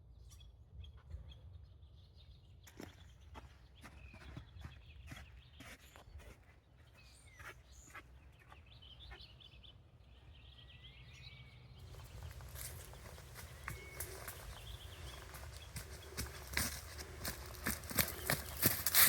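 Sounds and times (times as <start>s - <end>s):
bird chirps: 0.2s - 19.0s
footsteps in snow: 11.8s - 19.0s.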